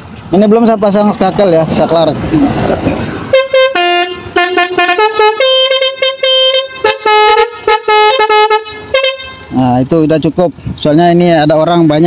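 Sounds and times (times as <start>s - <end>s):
musical air horn playing a tune: 3.3s - 9.6s.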